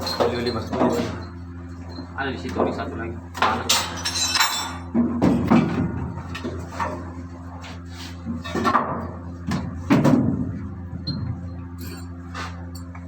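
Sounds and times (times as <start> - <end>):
steady machinery hum: 0.0 - 13.0
metal parts clanking: 3.6 - 4.8.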